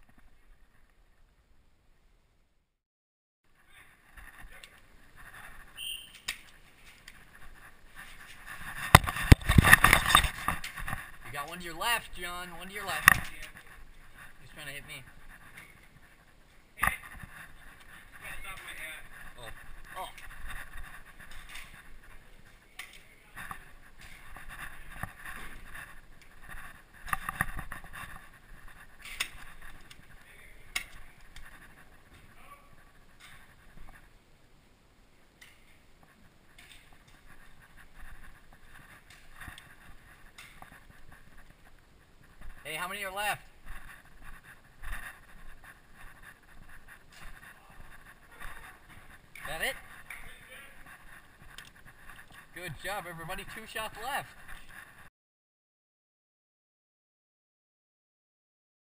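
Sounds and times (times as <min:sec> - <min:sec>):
rustling and shuffling: 0:03.5 - 0:55.1
low rustling movement: 0:35.6 - 0:55.1.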